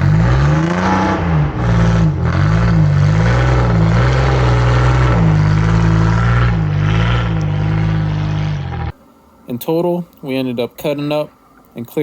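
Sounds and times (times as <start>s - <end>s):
truck engine revving hard: 0.0s - 9.0s.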